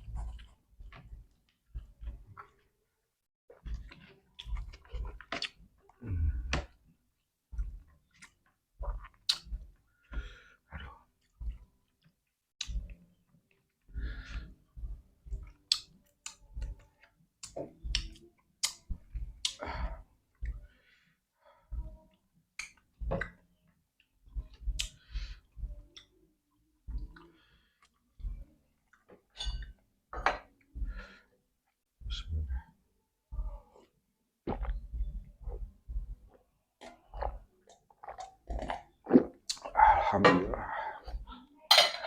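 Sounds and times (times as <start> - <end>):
person chewing and lip smacking: 3.5 - 6.8, 7.5 - 9.8, 10.8 - 13.0, 14.8 - 19.6, 24.4 - 26.2, 36.8 - 40.4.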